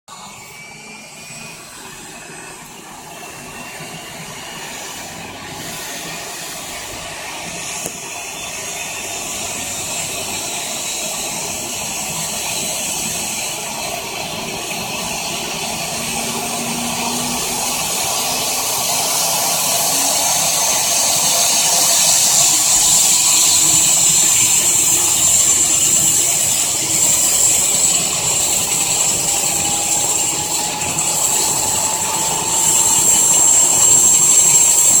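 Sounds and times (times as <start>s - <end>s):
helicopter turbine spooling up: 0.1s - 35.0s.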